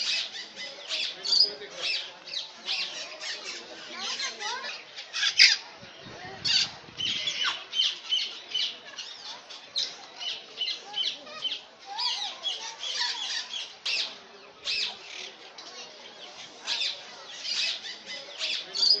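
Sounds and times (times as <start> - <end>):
parrots squawking and chattering: 0.0 - 5.6, 6.3 - 15.4, 16.4 - 19.0.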